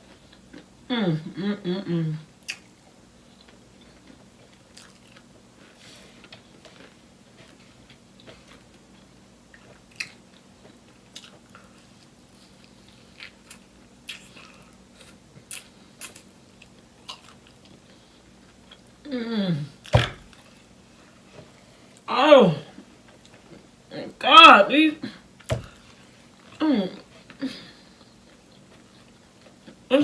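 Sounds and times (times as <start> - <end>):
faint steady hum: 0.0 - 30.0
chewing crispy fried food: 2.4 - 19.0, 25.3 - 29.9.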